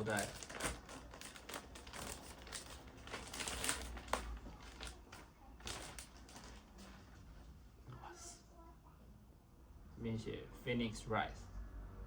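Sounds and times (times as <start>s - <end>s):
packaging crinkling and rustling: 0.0s - 7.0s.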